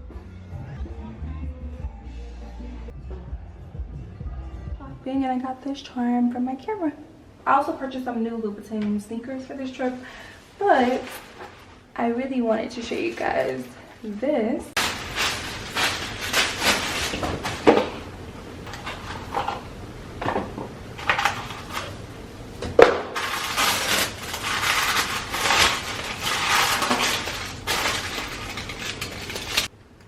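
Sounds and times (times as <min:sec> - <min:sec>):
packaging rustling and crinkling: 0:10.1 - 0:12.1, 0:12.7 - 0:14.2, 0:14.8 - 0:19.7, 0:21.0 - 0:22.0, 0:22.8 - 0:29.7.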